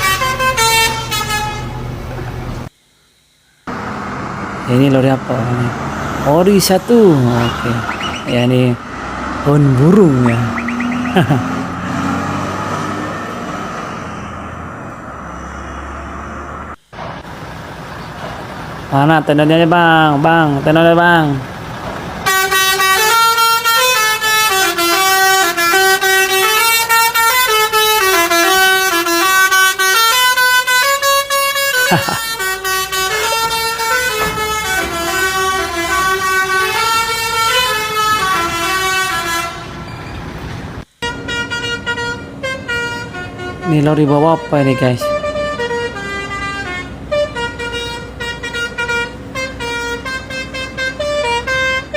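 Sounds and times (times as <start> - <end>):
musical air horn tune: 0.0 - 1.8, 22.2 - 39.9, 41.0 - 51.9
lorry engine hum: 0.0 - 51.9
road noise: 0.0 - 51.9.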